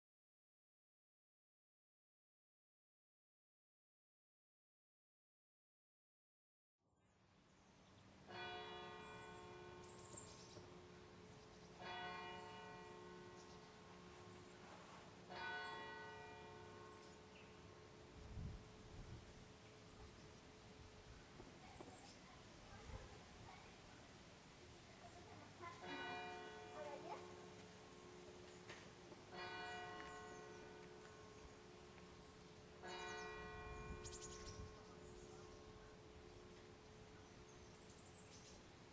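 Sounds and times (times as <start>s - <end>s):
church bell striking: 8.2s - 18.8s, 25.6s - 37.7s.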